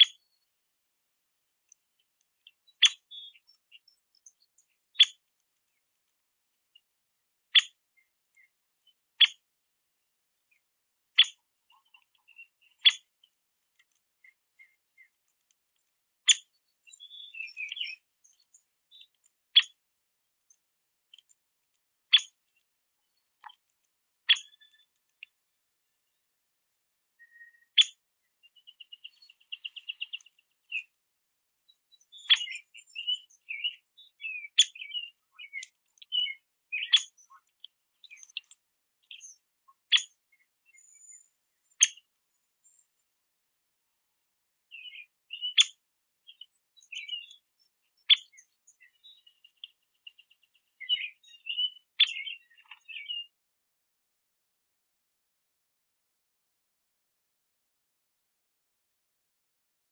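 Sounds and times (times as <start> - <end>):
woodpecker call notes: 2.4 - 5.3, 16.3 - 18.1, 24.2 - 25.3, 32.0 - 42.1, 44.7 - 47.4.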